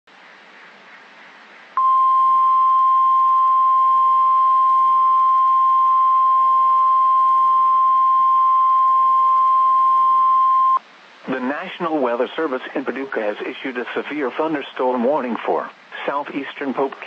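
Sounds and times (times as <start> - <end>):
faint radio hiss: 0.1 - 17.0
steady warning alarm tone: 1.8 - 10.8.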